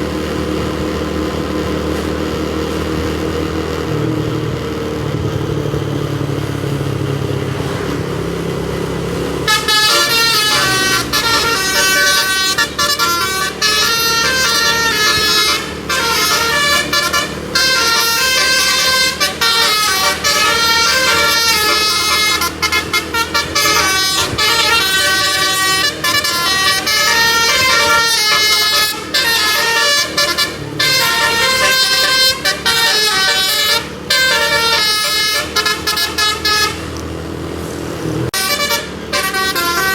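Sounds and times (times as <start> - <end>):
vehicle engine running: 0.0 - 39.9
musical air horn melody: 9.4 - 37.0, 38.3 - 39.9.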